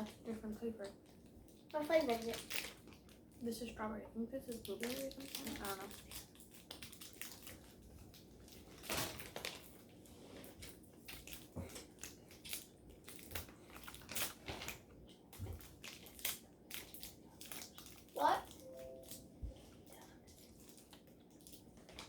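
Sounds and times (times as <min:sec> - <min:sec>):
snack eating crackles: 0:00.8 - 0:03.4, 0:04.4 - 0:22.0
wrapper crackling: 0:01.7 - 0:03.3, 0:04.5 - 0:10.0, 0:11.0 - 0:15.0, 0:15.6 - 0:19.3.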